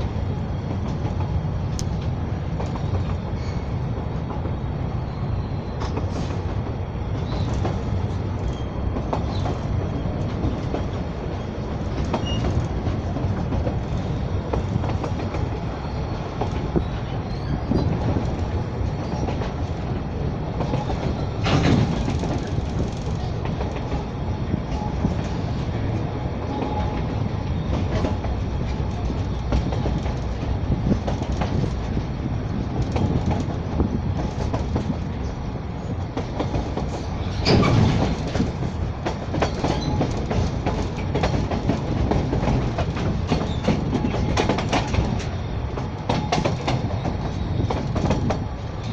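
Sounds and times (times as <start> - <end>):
train wheels rumbling on rails: 0.0 - 48.9
clicks over rail joints: 20.6 - 24.1, 36.2 - 48.9.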